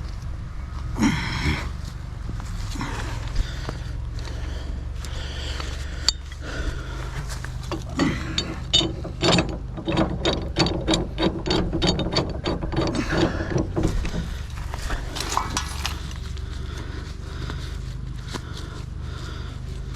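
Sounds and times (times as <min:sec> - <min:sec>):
steady low hum: 0:00.0 - 0:19.9
ratchet clicking: 0:06.0 - 0:14.5.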